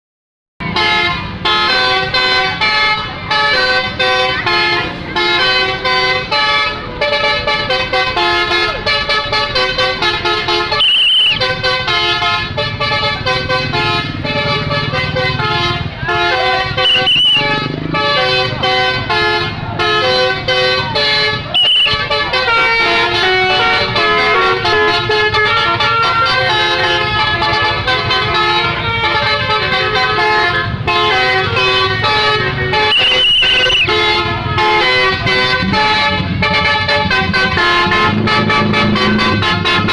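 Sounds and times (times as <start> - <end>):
multi-tone bus horn tune: 0.6 - 39.9
high squeals: 10.8 - 11.4, 16.8 - 17.6, 32.9 - 33.9.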